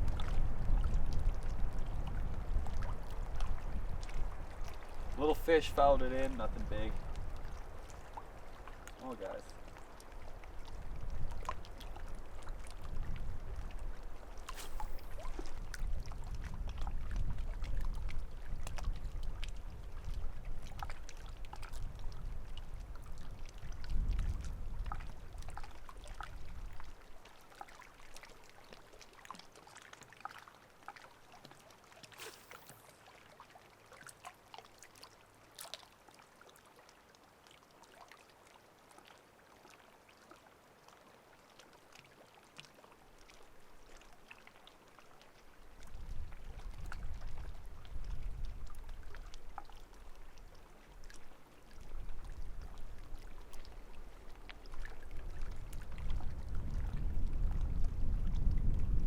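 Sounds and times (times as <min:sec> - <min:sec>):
wind rumble on microphone: 0:00.0 - 0:08.9, 0:10.0 - 0:27.1, 0:45.7 - 0:59.0
water trickling and splashing: 0:00.0 - 0:59.0.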